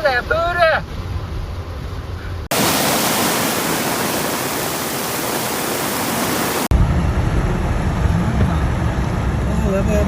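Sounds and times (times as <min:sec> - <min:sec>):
low rumbling: 0:00.9 - 0:10.0
floodwater rushing: 0:01.8 - 0:06.7.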